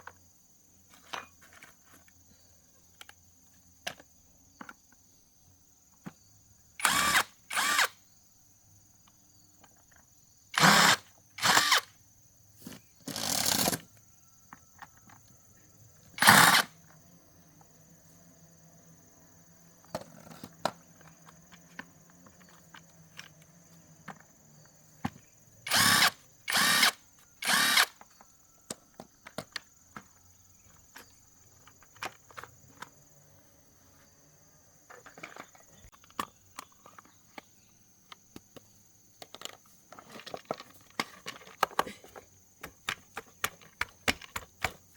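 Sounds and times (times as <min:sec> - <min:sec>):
power drill bursts: 0:06.8 - 0:08.0, 0:10.6 - 0:11.9, 0:16.2 - 0:16.8, 0:25.6 - 0:28.0
clicks and knocks of parts: 0:25.0 - 0:32.9, 0:34.9 - 0:37.5, 0:38.1 - 0:44.9.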